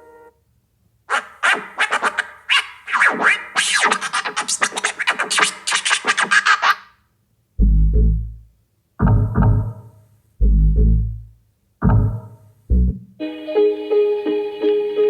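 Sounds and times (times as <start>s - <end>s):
short scratchy sliding sounds: 1.1s - 7.0s.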